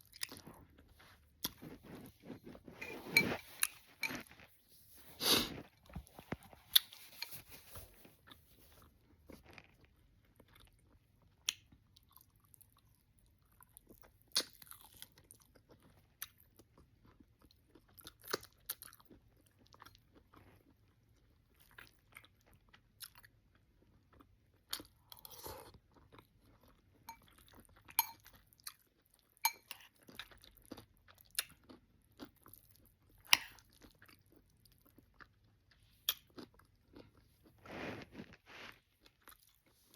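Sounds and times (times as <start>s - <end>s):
chewing and lip-smacking: 8.2s - 37.6s.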